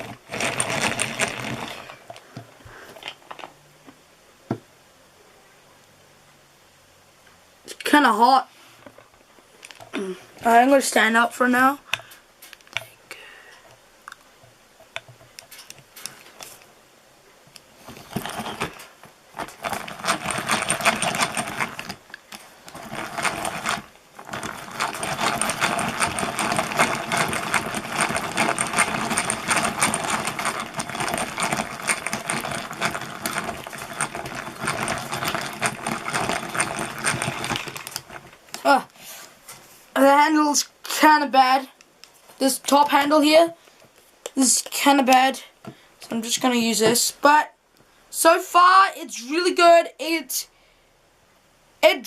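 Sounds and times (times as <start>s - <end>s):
hand-cranked drill clattering: 0.0s - 2.2s, 17.9s - 38.6s.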